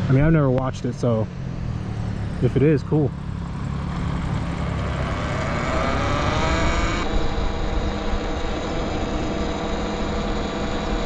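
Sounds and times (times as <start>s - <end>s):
low rumble: 0.0s - 11.0s
electric motor whine: 3.6s - 11.0s.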